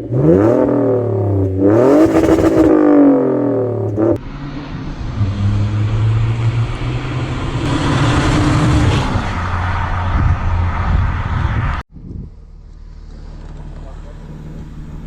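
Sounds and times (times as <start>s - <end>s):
car engine revving: 0.0s - 11.8s.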